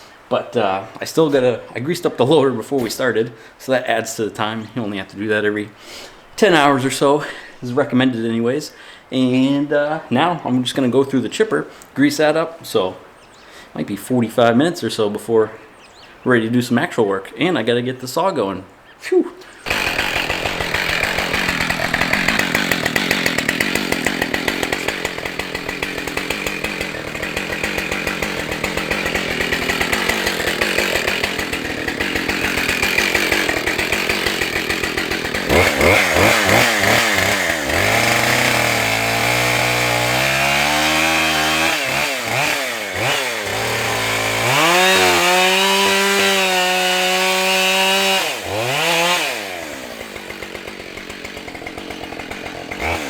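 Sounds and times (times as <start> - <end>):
chainsaw running and revving: 19.6 - 53.0.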